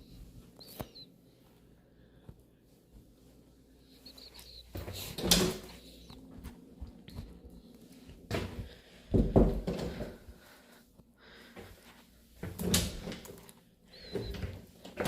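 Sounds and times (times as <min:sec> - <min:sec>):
door knocking and rattling: 0:09.2 - 0:09.9.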